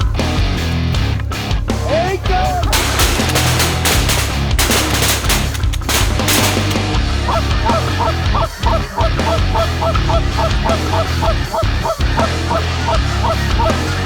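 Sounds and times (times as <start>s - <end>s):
geese honking: 2.8s - 14.0s.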